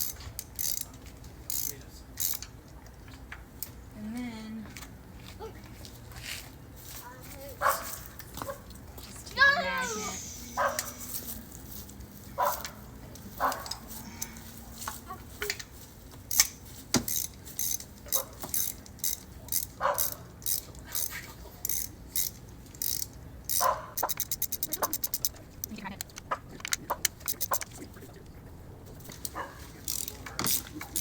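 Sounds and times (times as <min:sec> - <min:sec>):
hand ratchet clicking: 0:00.0 - 0:00.9, 0:01.5 - 0:02.5, 0:16.3 - 0:27.8, 0:29.0 - 0:31.0.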